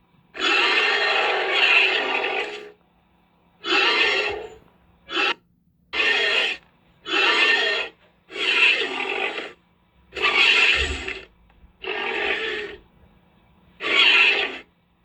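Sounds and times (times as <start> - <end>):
faint low hum: 0.0 - 15.0
wild boar harsh breathy grunts: 0.4 - 2.8, 3.6 - 5.4, 6.0 - 12.9, 13.8 - 14.7.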